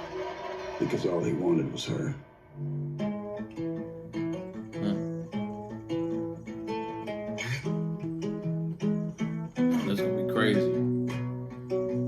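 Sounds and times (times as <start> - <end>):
acoustic guitar picking melody: 2.5 - 12.0.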